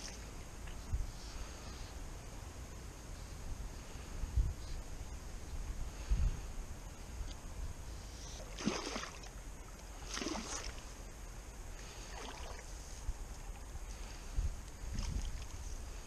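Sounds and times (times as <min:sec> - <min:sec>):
wind rumble on microphone: 0:00.0 - 0:16.0
water splashing: 0:08.4 - 0:11.0, 0:11.9 - 0:12.8.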